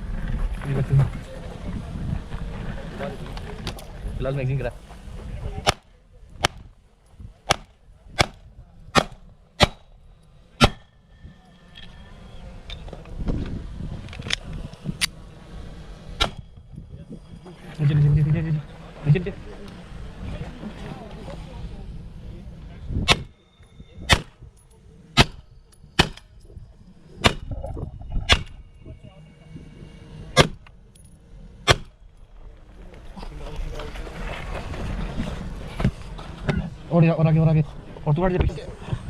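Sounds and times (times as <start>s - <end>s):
handgun shots: 9.0s - 9.8s, 24.1s - 24.3s, 26.0s - 26.2s
faint ringing tone: 10.1s - 13.0s, 15.2s - 32.9s.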